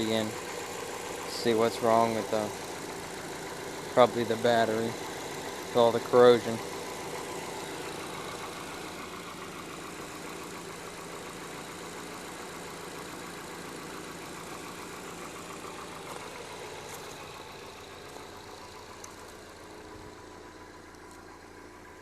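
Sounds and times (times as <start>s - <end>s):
car engine idling: 0.0s - 22.0s.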